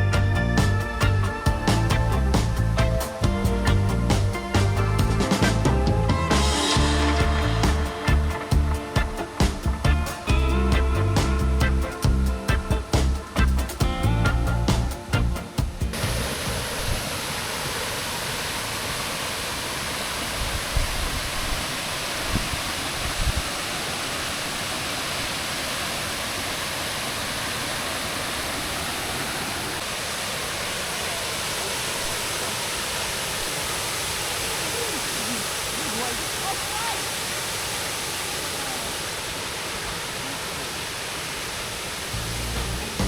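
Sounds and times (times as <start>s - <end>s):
music track: 0.0s - 16.2s, 42.2s - 43.0s
waterfall rushing: 0.0s - 43.0s
wind buffeting microphone: 20.2s - 23.6s.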